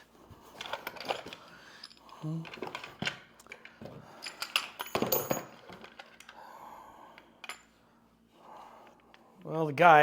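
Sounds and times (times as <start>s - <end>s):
small hard parts clinking: 0.6s - 6.4s.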